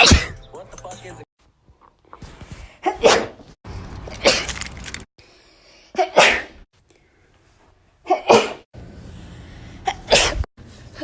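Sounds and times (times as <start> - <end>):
person sneezing: 2.8 - 3.4, 5.9 - 6.6, 8.1 - 8.6, 9.8 - 10.5.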